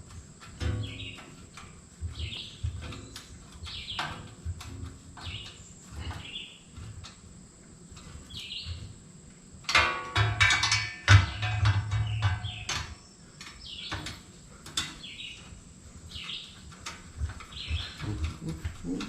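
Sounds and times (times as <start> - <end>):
hand tools on metal: 0.0 - 7.3, 9.7 - 19.0
bird chirping: 0.1 - 4.3, 5.2 - 6.9, 8.0 - 9.0, 11.2 - 19.0.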